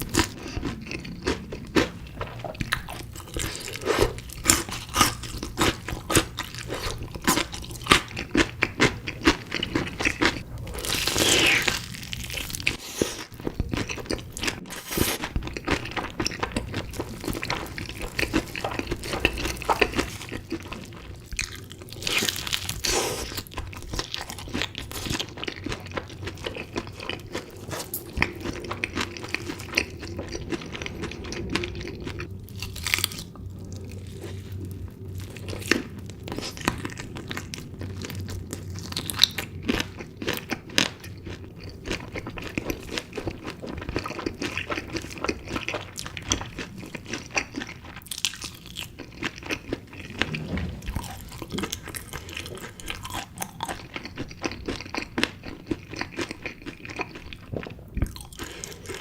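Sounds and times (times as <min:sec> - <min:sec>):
crunchy bites and chewing: 0:52.1 - 0:59.0.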